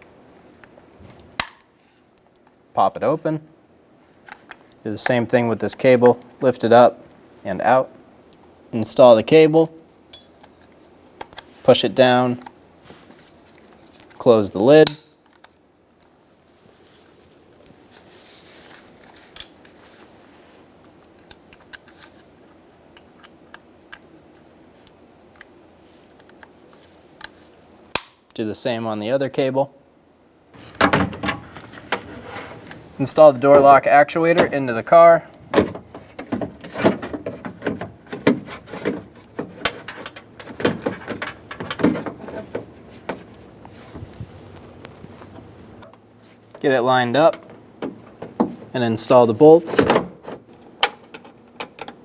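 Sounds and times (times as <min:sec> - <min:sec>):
parts knocking and rattling in door: 0:30.6 - 0:32.7, 0:35.4 - 0:43.3, 0:47.3 - 0:48.7, 0:49.7 - 0:52.0.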